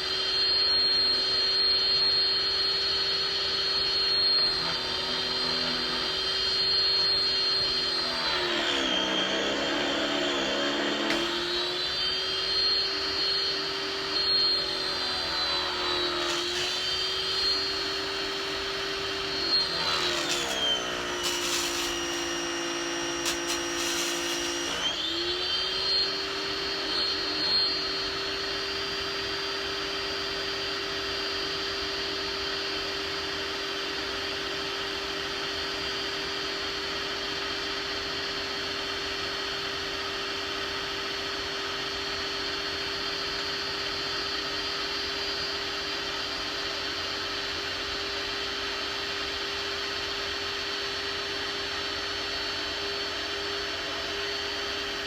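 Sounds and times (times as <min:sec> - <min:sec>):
pressure washer pump motor whining: 0:00.0 - 0:55.0.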